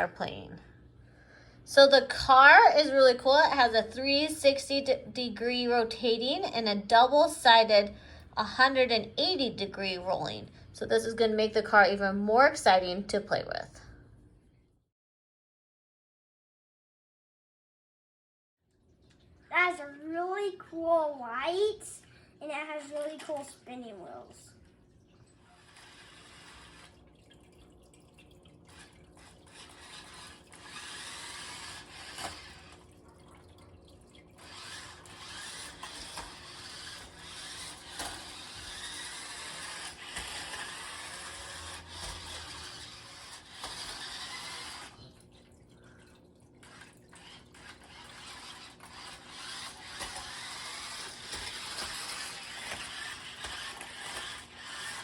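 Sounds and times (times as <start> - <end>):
toy car electric motors whirring: 1.7 - 12.9, 22.6 - 24.5, 25.3 - 27.5, 28.6 - 33.0, 34.3 - 45.2, 46.6 - 55.0.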